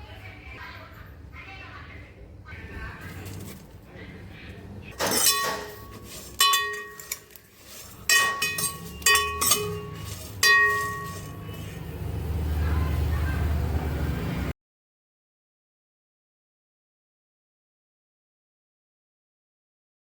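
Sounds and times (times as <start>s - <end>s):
metal utensils clinking on pot: 4.9s - 11.9s.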